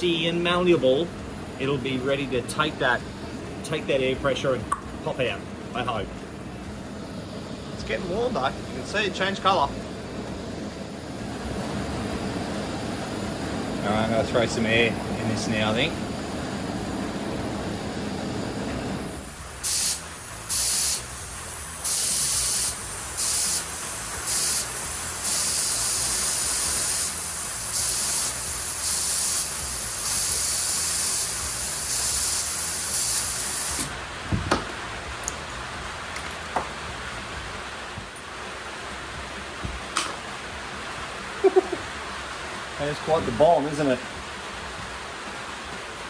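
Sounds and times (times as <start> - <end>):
compressed air hissing: 12.9 - 34.0.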